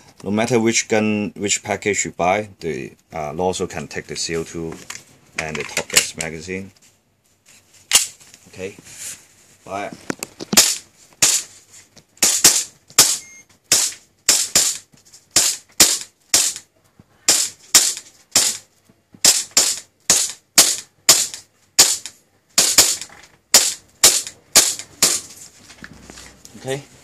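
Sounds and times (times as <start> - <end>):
airsoft pistol firing pops: 15.4 - 16.6.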